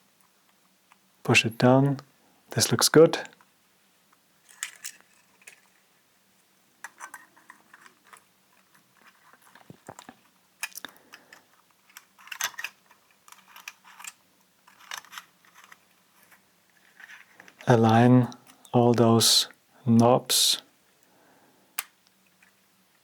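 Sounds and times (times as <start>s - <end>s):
plastic parts clicking and scraping: 4.4s - 5.9s, 6.8s - 17.7s.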